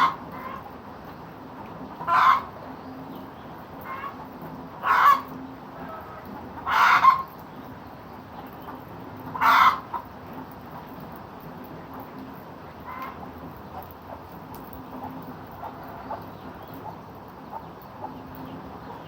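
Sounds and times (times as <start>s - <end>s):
chicken clucking: 0.0s - 0.7s, 1.9s - 2.5s, 3.8s - 7.4s, 8.6s - 10.1s.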